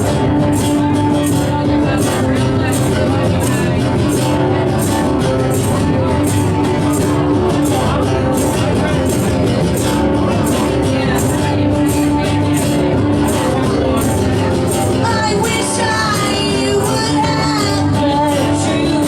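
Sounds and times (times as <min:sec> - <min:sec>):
rock band playing loudly: 0:00.0 - 0:19.0.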